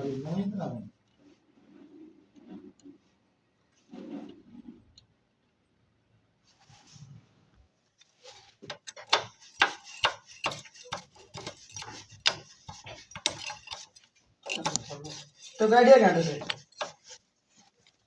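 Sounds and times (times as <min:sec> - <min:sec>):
hand tools clicking and knocking: 0:08.6 - 0:18.0.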